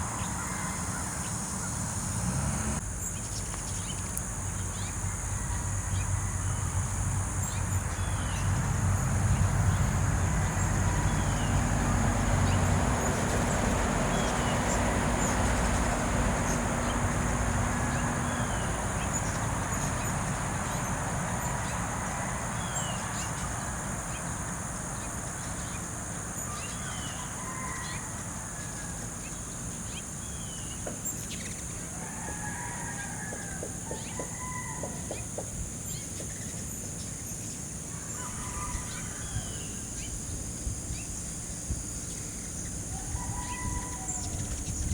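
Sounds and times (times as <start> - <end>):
warbling bird calls: 0.0 - 2.8, 12.4 - 40.3
small birds chirping: 12.4 - 28.0, 29.1 - 32.6, 33.2 - 44.9.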